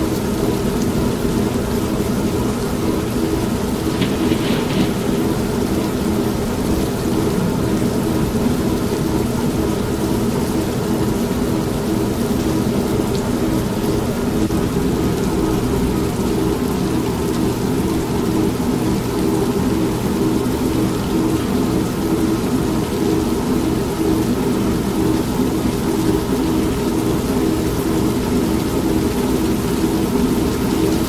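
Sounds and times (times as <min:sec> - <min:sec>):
heavy rain: 0:00.0 - 0:31.0
washing machine humming: 0:02.5 - 0:31.0
thunder rumbling: 0:03.6 - 0:09.1.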